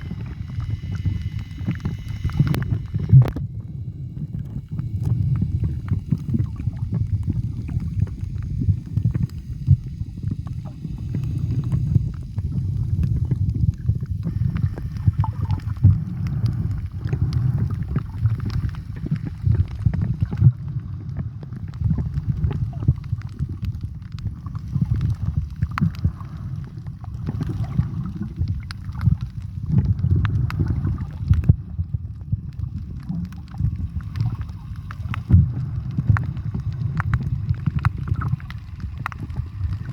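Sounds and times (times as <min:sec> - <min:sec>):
small crackles underwater: 0:00.0 - 0:39.9
underwater rumble of moving water: 0:00.0 - 0:39.9.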